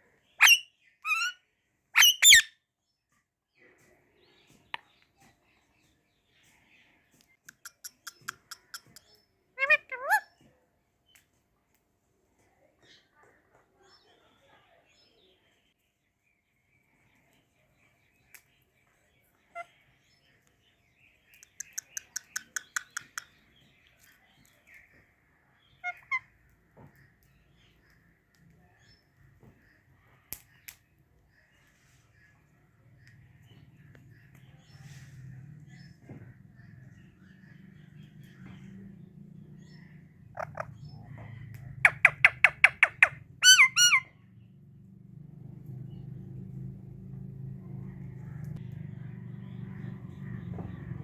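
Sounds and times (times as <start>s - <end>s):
parakeet squawking: 0.4s - 1.4s, 2.0s - 2.5s, 40.4s - 40.9s, 41.8s - 44.1s
parrot chirping: 0.4s - 1.4s, 2.0s - 2.5s, 40.3s - 41.1s, 41.8s - 44.1s.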